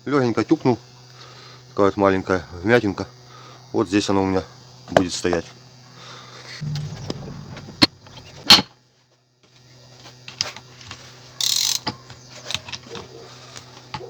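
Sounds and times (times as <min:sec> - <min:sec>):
ratchet wrench rasping: 0:11.4 - 0:11.8.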